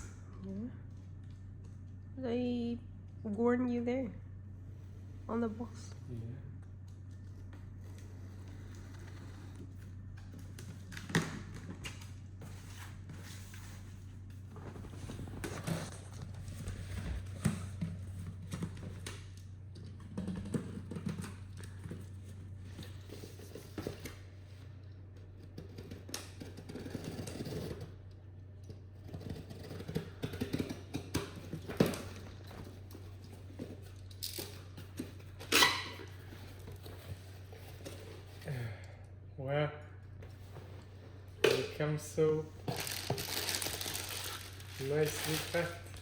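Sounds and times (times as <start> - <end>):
low electrical hum: 0.0 - 46.0.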